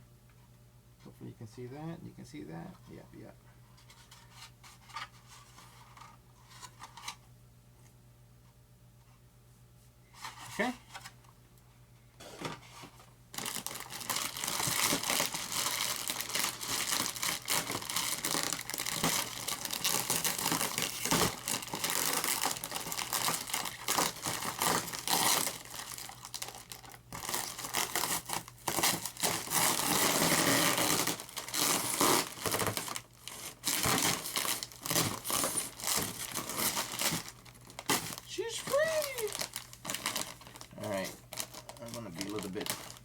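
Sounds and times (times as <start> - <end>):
plastic wrap crinkling and tearing: 13.3 - 43.0.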